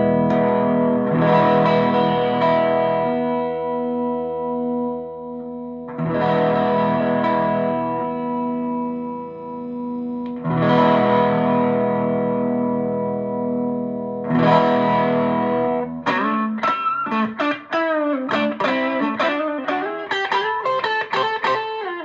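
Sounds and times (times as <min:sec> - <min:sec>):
distorted electric guitar: 0:00.0 - 0:22.0.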